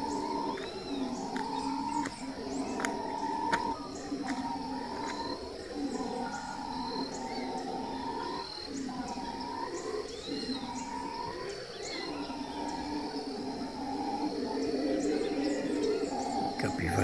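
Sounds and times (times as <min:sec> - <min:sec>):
birds chirping: 0:00.0 - 0:17.0
howler monkeys roaring: 0:00.0 - 0:17.0.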